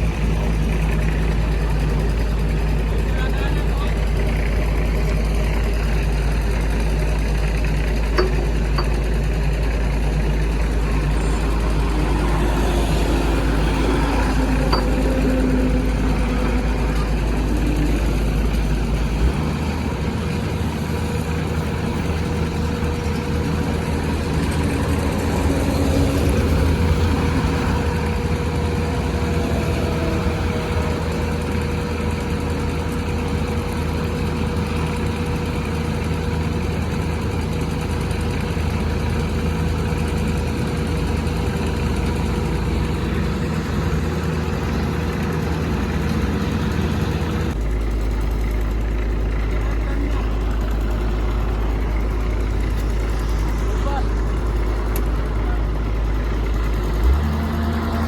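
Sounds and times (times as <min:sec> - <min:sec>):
excavator diesel engine running: 0:00.0 - 0:58.0
steady machine whine: 0:04.0 - 0:33.8.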